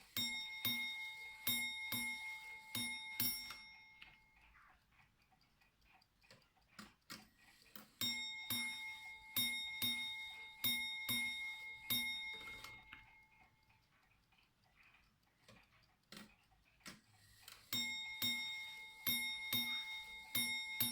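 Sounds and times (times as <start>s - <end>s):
clock ticking: 0.0s - 20.9s
sharp clock clicks: 0.0s - 20.9s
clock bell striking in pairs: 0.2s - 4.0s, 8.0s - 13.0s, 17.8s - 20.9s.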